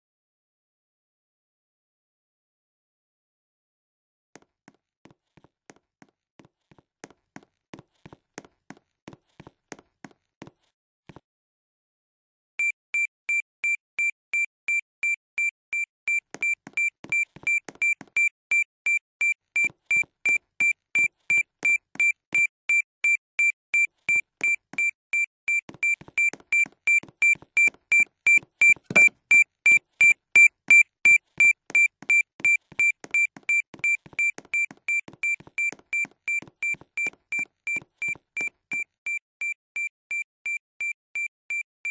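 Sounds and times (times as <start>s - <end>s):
fire alarm beeping: 23.1s - 35.7s.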